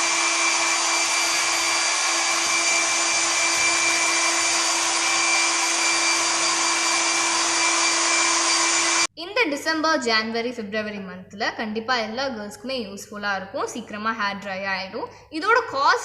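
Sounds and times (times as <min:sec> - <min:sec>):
hair dryer blowing air: 0:00.0 - 0:09.1.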